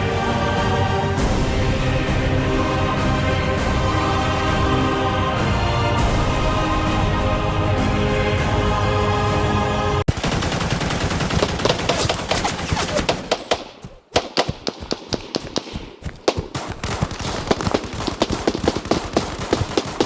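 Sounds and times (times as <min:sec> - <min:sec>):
music: 0:00.0 - 0:10.1
sharp cracks and pops: 0:10.9 - 0:20.0.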